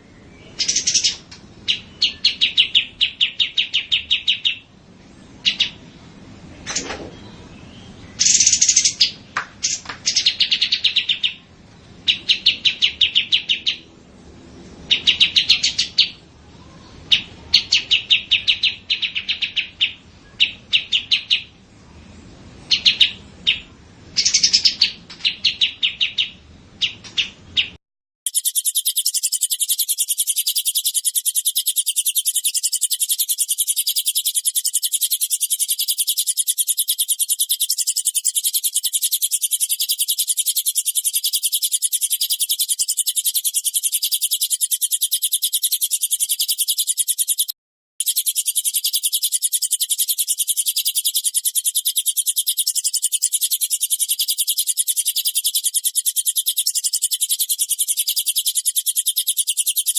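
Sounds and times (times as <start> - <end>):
songbird chirping: 0.0 - 59.9
high-pitched fast trilling: 28.3 - 59.9.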